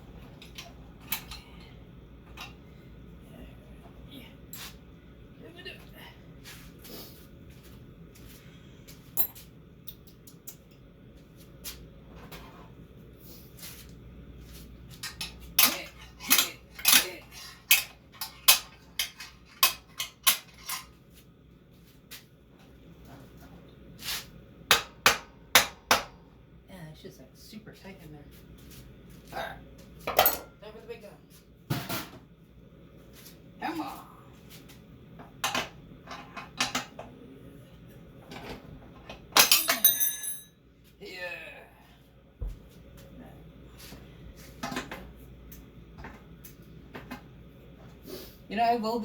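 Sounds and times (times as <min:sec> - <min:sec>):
hand tools clinking on metal: 0:15.0 - 0:20.9, 0:39.4 - 0:40.5.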